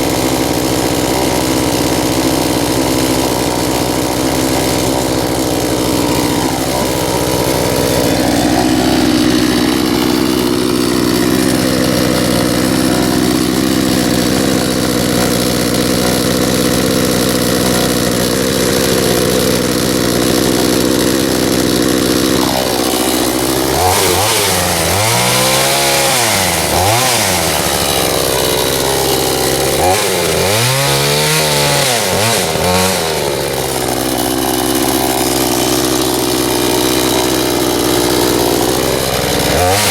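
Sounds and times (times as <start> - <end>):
chainsaw cutting into stump: 0.0 - 39.9.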